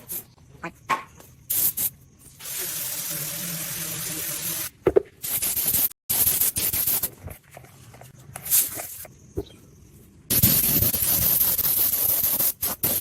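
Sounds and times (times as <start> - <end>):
pressurised spray hissing: 1.5 - 7.1, 10.3 - 13.0.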